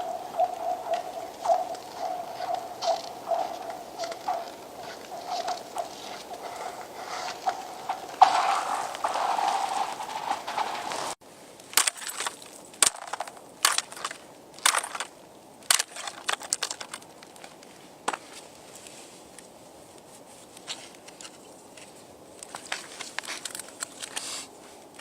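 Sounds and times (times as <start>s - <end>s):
steady scraping hiss: 0.0s - 25.0s
lake ice cracking: 4.1s - 15.1s.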